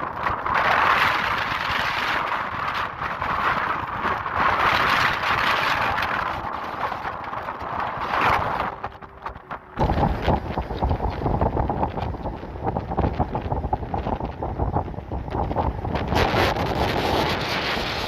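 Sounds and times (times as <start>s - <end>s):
hurricane wind gusts: 0.0s - 18.0s
rain rushing: 3.7s - 18.0s.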